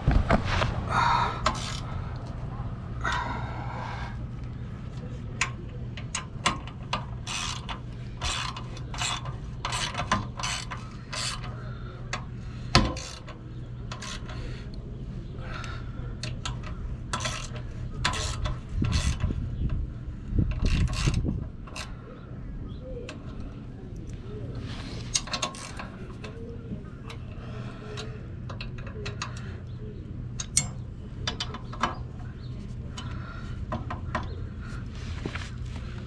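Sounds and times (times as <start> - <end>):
steady low hum: 0.0 - 36.0
ratchet tool clicking: 6.1 - 11.5.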